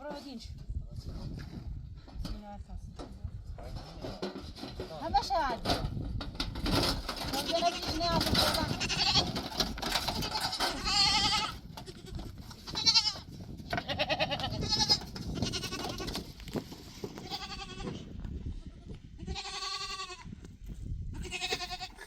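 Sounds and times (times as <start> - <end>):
quavering bleats: 19.2 - 20.2, 21.2 - 22.0.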